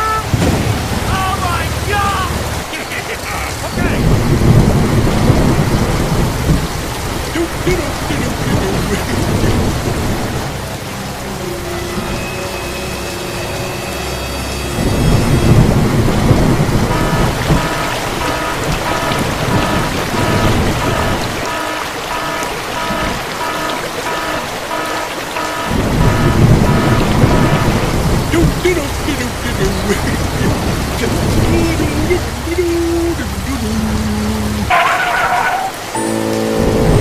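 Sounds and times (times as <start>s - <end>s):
deep thunder rumbles: 0.0s - 2.7s, 3.3s - 11.3s, 14.8s - 34.8s
heavy rain falling: 0.0s - 37.0s
repeating higher tones: 16.8s - 28.4s, 35.9s - 37.0s.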